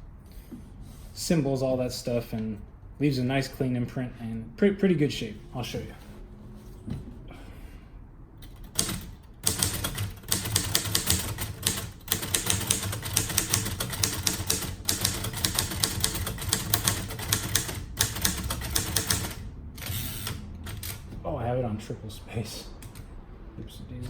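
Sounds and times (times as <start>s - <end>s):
typewriter keys typing fast: 8.5s - 21.1s.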